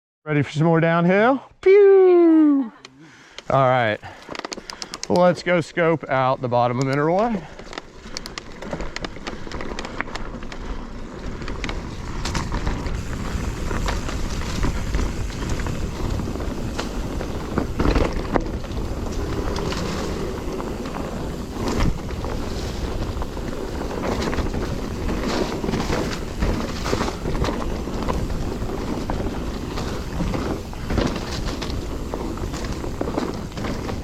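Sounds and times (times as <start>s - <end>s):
bike tyres rolling on dirt: 3.2s - 34.0s
bike knocking and rattling: 4.0s - 34.0s
wind over microphone: 9.2s - 34.0s.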